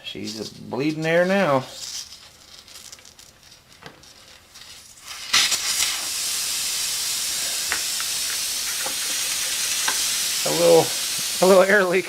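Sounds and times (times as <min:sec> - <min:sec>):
air hissing from tire: 0:04.6 - 0:12.0.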